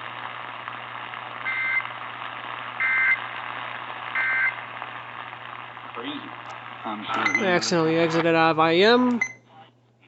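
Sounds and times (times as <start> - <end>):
radio hiss and low hum: 0.0 - 10.0
harsh digital data bursts: 4.1 - 4.6.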